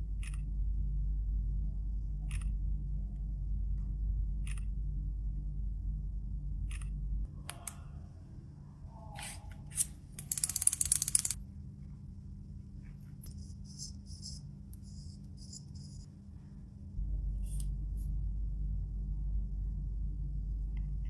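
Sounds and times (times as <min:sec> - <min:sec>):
low steady hum: 0:00.0 - 0:21.0
packaging clicks and taps: 0:10.2 - 0:11.4.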